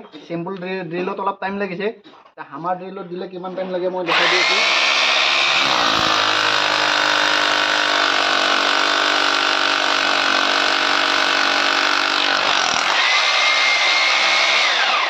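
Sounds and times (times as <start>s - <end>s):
rotary hammer drill drilling: 4.1s - 15.0s.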